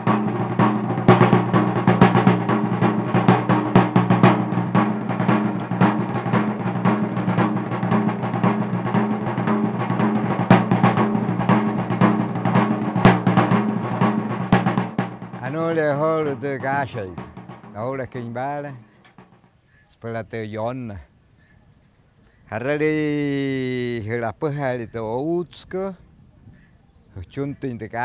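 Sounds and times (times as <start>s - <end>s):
rapid drumming: 0.0s - 19.6s.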